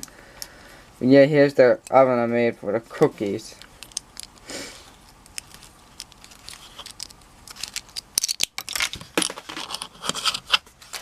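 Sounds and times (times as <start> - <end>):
plastic bricks clicking and rattling: 3.6 - 4.4, 5.0 - 10.6.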